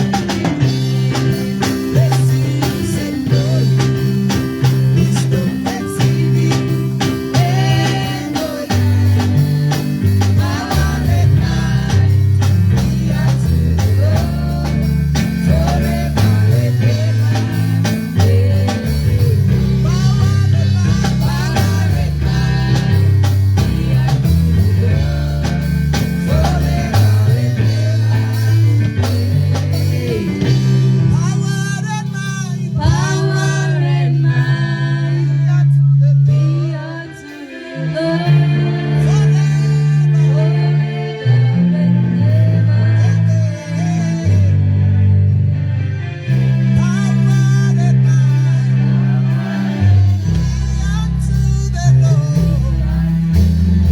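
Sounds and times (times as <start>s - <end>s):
people singing: 0.0s - 45.4s, 46.3s - 53.9s
gospel band playing: 0.0s - 53.9s.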